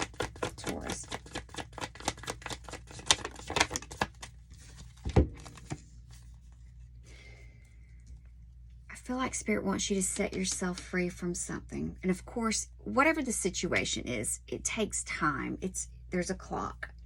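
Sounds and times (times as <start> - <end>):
cards being shuffled: 0.0 - 6.6.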